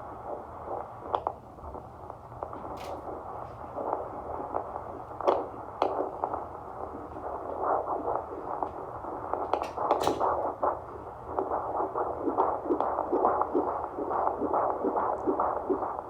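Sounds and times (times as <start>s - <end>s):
fetal heartbeat whooshing on doppler: 0.0s - 16.0s.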